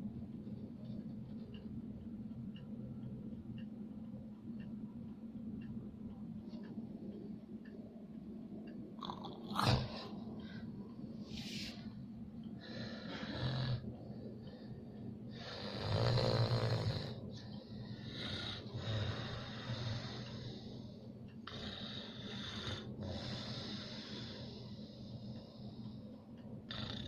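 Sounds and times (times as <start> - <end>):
pet snoring: 9.0 - 10.1, 12.8 - 13.9, 15.3 - 17.2, 18.0 - 20.6, 21.5 - 24.6, 26.7 - 27.0.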